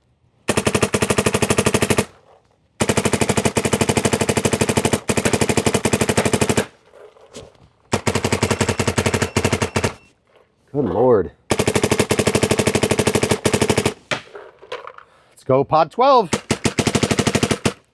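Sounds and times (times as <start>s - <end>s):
paintball marker firing rapidly: 2.8s - 6.8s, 7.9s - 10.0s, 11.5s - 14.3s, 16.3s - 17.9s.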